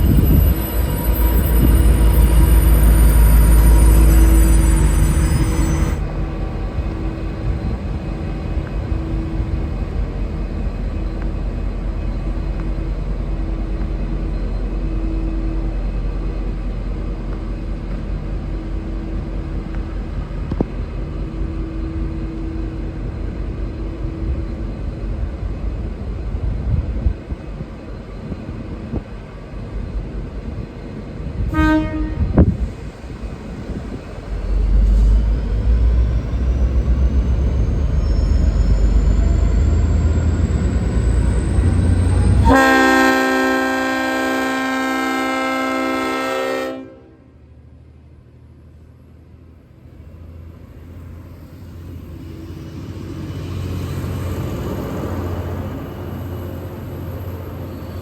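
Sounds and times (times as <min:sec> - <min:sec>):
diesel locomotive rumbling: 0:00.0 - 0:58.0
locomotive horn blast: 0:31.5 - 0:32.6, 0:42.3 - 0:47.4.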